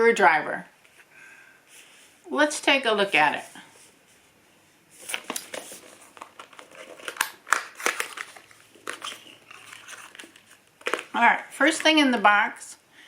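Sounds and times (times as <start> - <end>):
packaging crinkling and rustling: 5.0 - 11.9.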